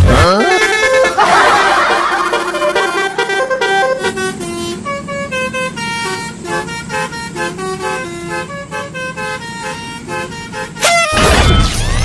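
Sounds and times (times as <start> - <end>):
bus horn playing a tune: 0.0 - 11.4
steady low hum: 0.0 - 11.9.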